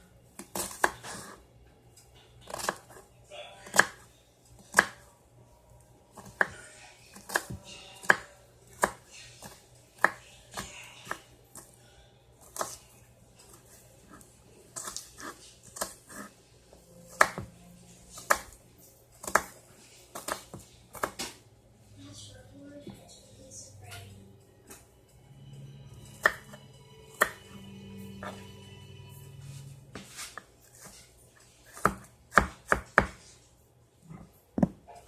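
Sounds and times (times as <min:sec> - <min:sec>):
knife chopping on cutting board: 0:00.4 - 0:01.4, 0:02.5 - 0:03.0, 0:03.6 - 0:04.0, 0:04.7 - 0:05.0, 0:06.2 - 0:11.7, 0:14.8 - 0:16.3, 0:17.1 - 0:17.5, 0:18.1 - 0:18.6, 0:19.2 - 0:21.4, 0:26.2 - 0:26.6, 0:31.6 - 0:33.3.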